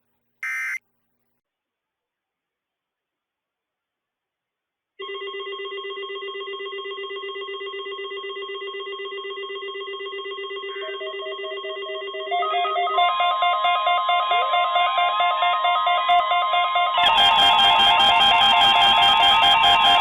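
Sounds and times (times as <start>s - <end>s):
higher electronic tones: 0.4s - 0.8s
second steady tone: 0.4s - 0.8s.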